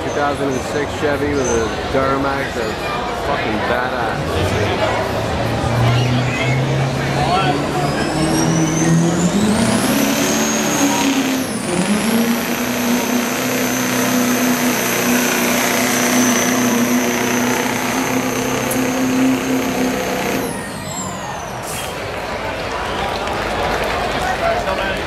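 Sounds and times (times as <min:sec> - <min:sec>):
diesel engine running hard: 0:00.0 - 0:24.9
turbo whistling: 0:07.7 - 0:22.0.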